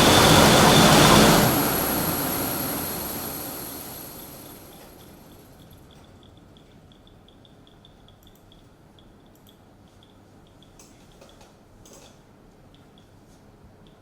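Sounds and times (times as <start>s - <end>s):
lottery machine whirring rush: 0.0s - 5.5s.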